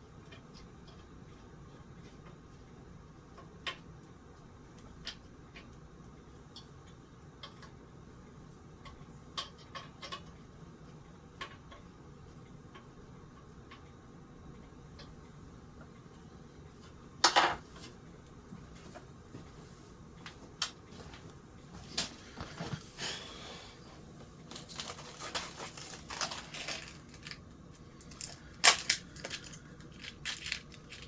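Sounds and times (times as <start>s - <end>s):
rustling: 24.2s - 31.0s.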